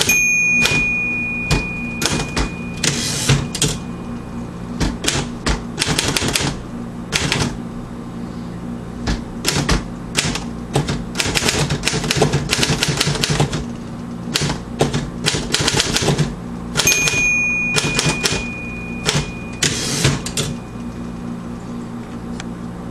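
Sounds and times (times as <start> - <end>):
typewriter key strikes: 0.0 - 0.9, 1.5 - 3.8, 5.0 - 6.6, 9.4 - 13.6, 14.3 - 20.6.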